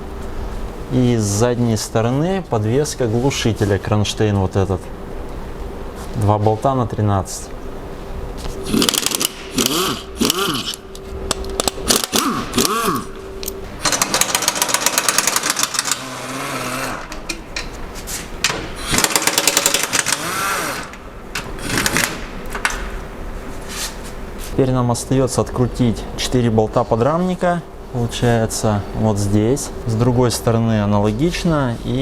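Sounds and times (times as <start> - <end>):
motor whine: 8.6 - 17.3, 18.8 - 22.1
impact wrench hammering: 8.7 - 17.7, 18.4 - 22.3.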